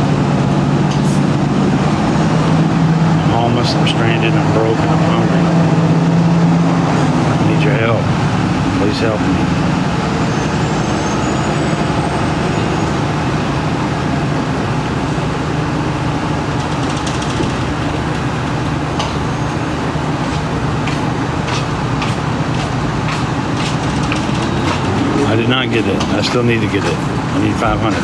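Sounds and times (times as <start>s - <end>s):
low engine hum: 0.0s - 28.0s
road traffic noise: 0.0s - 28.0s.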